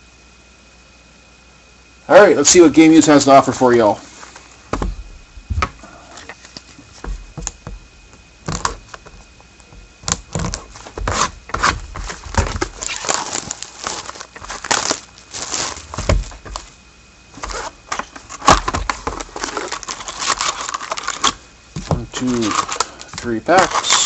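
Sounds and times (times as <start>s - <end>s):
cardboard being handled: 4.1s - 24.0s
plastic wrap crinkling: 10.0s - 24.0s.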